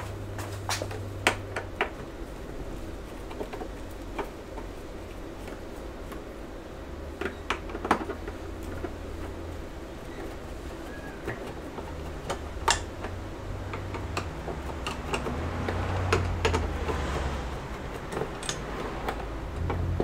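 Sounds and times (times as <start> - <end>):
low steady hum: 0.0 - 20.0
small parts and tools clicking: 10.0 - 20.0.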